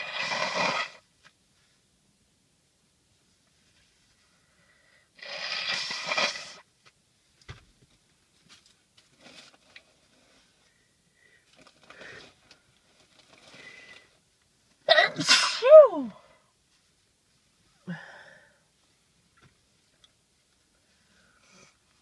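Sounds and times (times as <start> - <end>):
person sneezing: 14.9 - 16.3.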